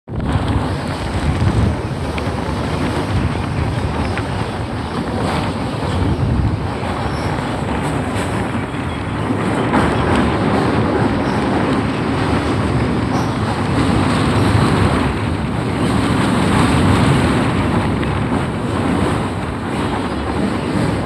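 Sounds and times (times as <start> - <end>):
low rumble: 0.1 - 13.0
moving train rushing: 0.1 - 21.0
wind buffeting microphone: 0.1 - 21.0.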